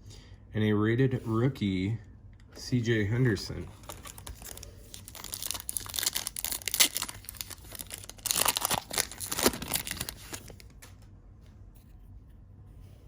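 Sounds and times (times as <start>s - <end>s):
card pack wrapper crackling: 3.8s - 11.0s.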